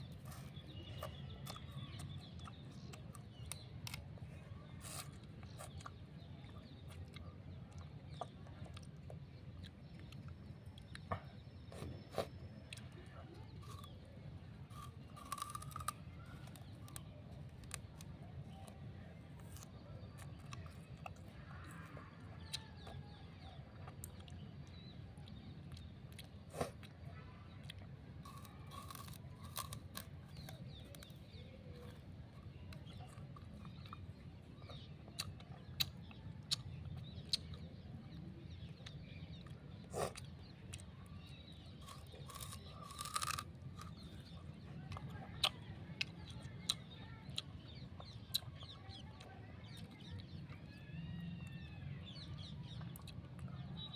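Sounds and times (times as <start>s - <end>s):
sugarcane crunching: 13.5s - 21.1s, 28.2s - 35.9s, 41.8s - 45.6s.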